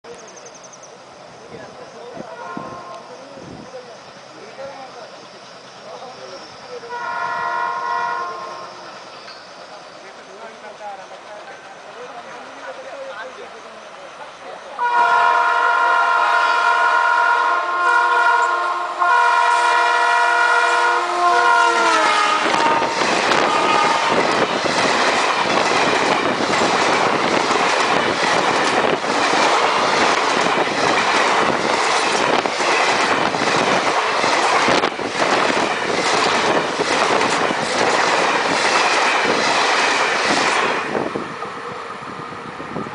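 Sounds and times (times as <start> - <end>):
locomotive horn blast: 2.4 - 3.1, 6.9 - 8.8, 14.8 - 24.4
train wheels clattering over rail joints: 22.5 - 41.0.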